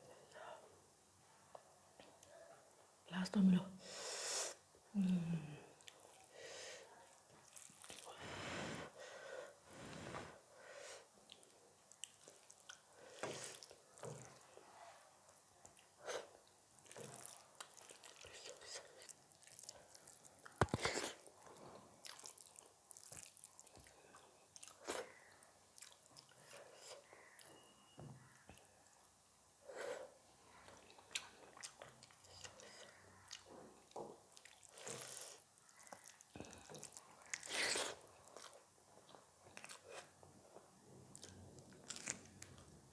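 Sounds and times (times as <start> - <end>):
close-miked chewing: 6.9 - 8.1, 11.2 - 14.6, 15.3 - 27.6, 30.5 - 42.9.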